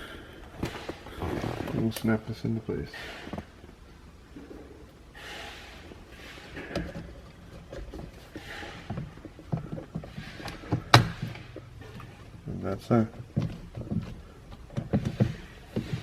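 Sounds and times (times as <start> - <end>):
soft breathy hisses: 5.1 - 6.7
handling knocks: 6.6 - 16.0.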